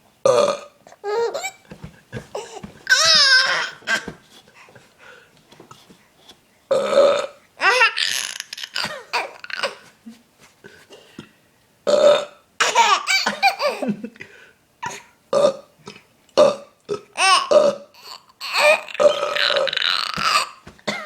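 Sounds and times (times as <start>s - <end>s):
man burping loudly: 0.3s - 0.8s, 6.7s - 7.4s, 11.9s - 12.4s, 15.3s - 17.9s, 18.9s - 20.3s
baby laughing: 1.0s - 1.6s, 2.3s - 4.2s, 7.6s - 9.8s, 12.6s - 14.0s, 17.2s - 20.6s.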